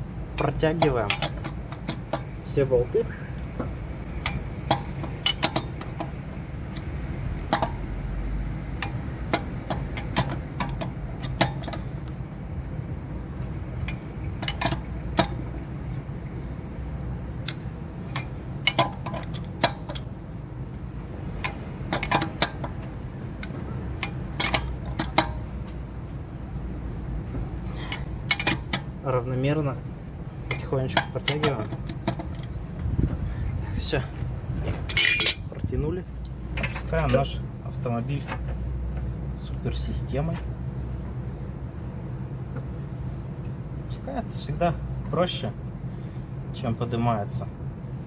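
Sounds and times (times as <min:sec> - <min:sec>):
wrench clicking on lug nuts: 0:00.3 - 0:02.4, 0:03.4 - 0:07.8, 0:08.8 - 0:12.2, 0:13.8 - 0:15.5, 0:17.4 - 0:20.1, 0:21.3 - 0:25.8, 0:27.8 - 0:29.0, 0:30.4 - 0:32.6.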